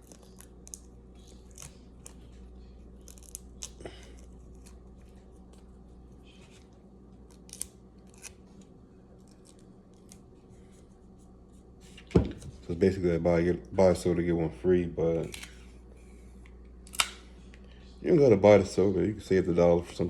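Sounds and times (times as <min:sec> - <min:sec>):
low steady hum: 0:00.0 - 0:20.0
small objects clicking and snipping: 0:03.0 - 0:04.8, 0:07.3 - 0:08.4.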